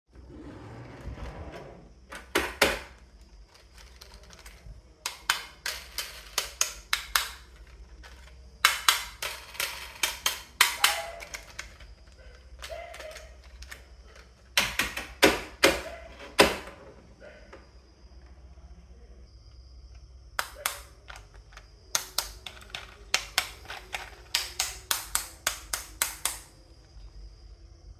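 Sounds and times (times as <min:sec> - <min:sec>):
marbles clacking on wooden run: 0:03.5 - 0:11.9.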